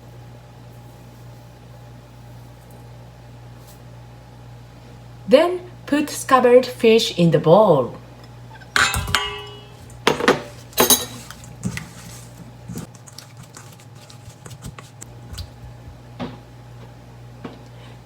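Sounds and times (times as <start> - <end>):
bowl clinking: 8.6 - 12.0
handling sounds: 8.7 - 15.8.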